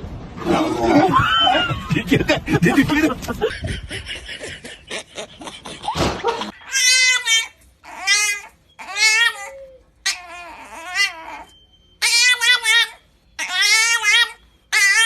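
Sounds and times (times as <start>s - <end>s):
cat yowling: 6.6s - 15.0s.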